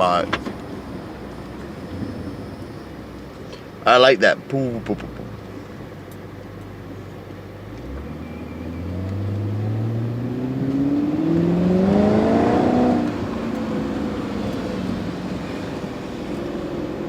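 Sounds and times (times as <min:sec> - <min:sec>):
engine accelerating: 0:06.4 - 0:17.0.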